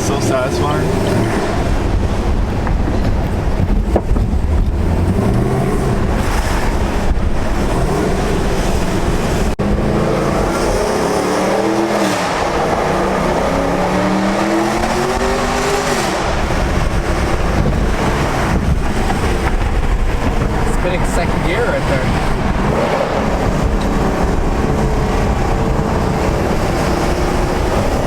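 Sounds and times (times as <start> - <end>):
car exhaust accelerating: 0.0 - 28.0.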